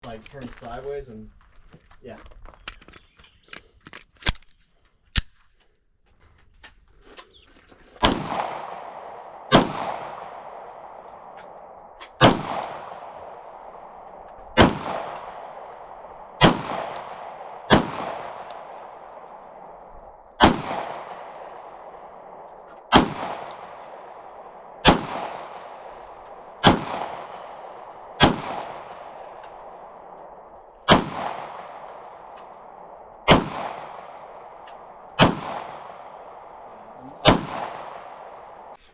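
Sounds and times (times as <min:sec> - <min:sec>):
pistol shots with ringing echo: 0:08.0 - 0:38.8.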